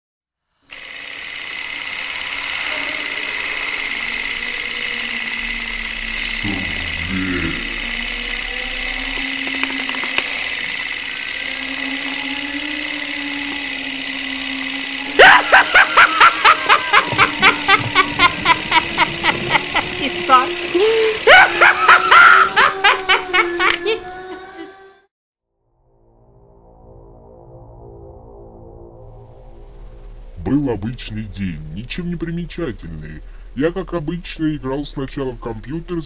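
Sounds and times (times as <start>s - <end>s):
eerie droning music: 0.6s - 25.1s, 25.7s - 36.0s
rhythmic cackling laugh: 15.0s - 24.5s.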